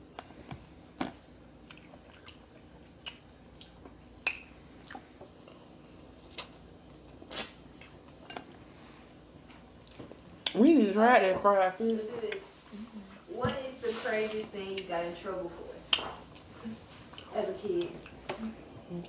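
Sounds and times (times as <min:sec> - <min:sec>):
chewing and lip-smacking: 0:01.0 - 0:06.6.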